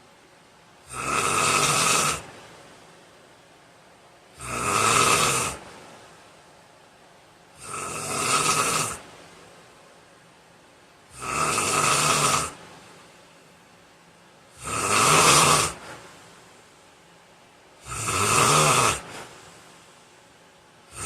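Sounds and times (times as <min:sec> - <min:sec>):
man snoring loudly: 0:00.9 - 0:02.3, 0:04.4 - 0:05.6, 0:07.6 - 0:09.0, 0:11.1 - 0:12.6, 0:14.6 - 0:15.9, 0:17.8 - 0:19.2.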